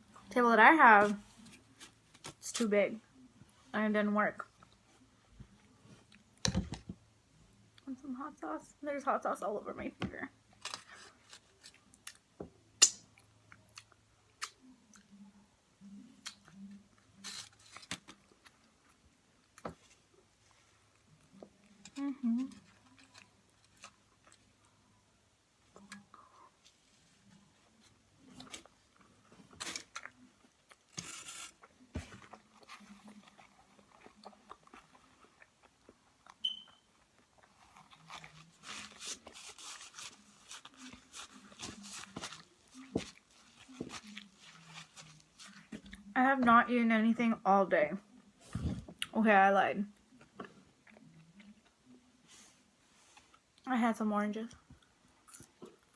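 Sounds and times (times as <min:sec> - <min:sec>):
chewing and crunching: 0:28.3 - 0:36.4, 0:37.0 - 0:46.1
chewing and wet mouth sounds: 0:29.9 - 0:38.8, 0:50.0 - 0:52.0.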